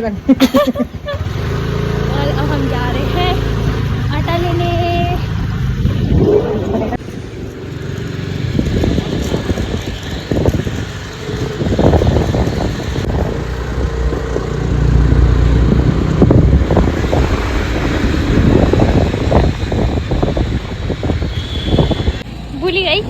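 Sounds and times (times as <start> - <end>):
road noise: 0.0 - 23.0
wind buffeting microphone: 0.1 - 23.0
scooter engine: 0.8 - 23.0
low rumble: 4.0 - 9.5.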